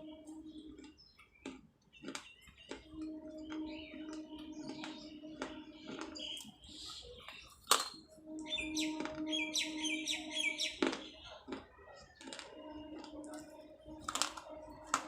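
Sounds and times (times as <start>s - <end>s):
steady low hum: 0.0s - 1.2s
bird chirping: 0.0s - 15.0s
clay pieces crunching being chewed: 0.0s - 15.0s.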